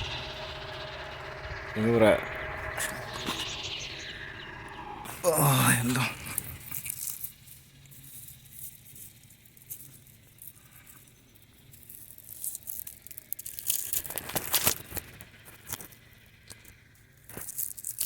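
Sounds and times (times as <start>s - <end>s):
faint low hum: 0.0s - 11.7s.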